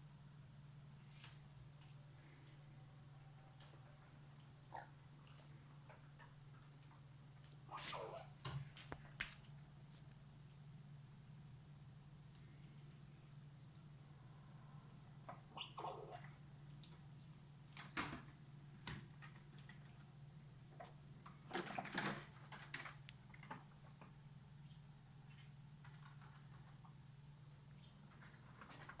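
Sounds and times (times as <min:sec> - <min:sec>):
steady low hum: 0:00.0 - 0:21.6
squirrels squeaking: 0:03.8 - 0:08.4, 0:15.5 - 0:16.4.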